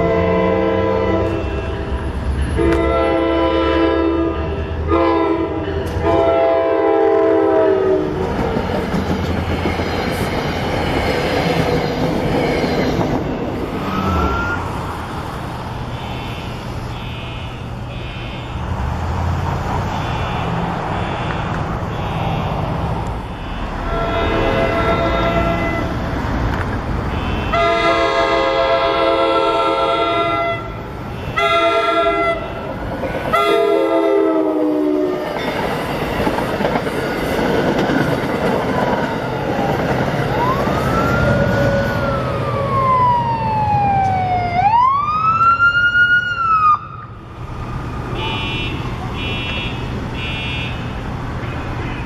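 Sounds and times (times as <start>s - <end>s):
train horn blasts: 0.0s - 8.2s, 23.3s - 26.0s, 27.1s - 32.7s, 33.3s - 35.4s
siren wailing: 13.7s - 14.9s, 19.9s - 22.6s, 23.3s - 25.9s, 40.2s - 47.2s.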